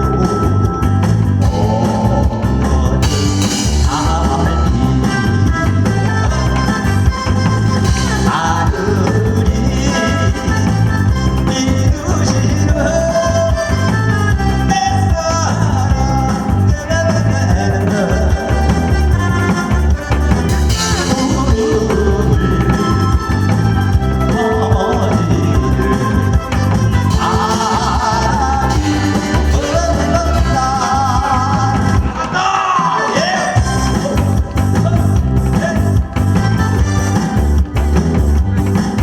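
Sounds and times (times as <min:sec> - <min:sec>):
person singing: 0:00.0 - 0:37.4
loud bouncy backing track: 0:00.0 - 0:39.0.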